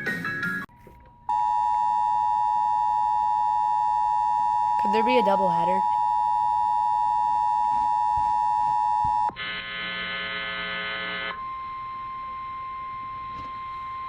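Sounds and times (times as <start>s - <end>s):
harsh buzz: 9.0s - 12.3s.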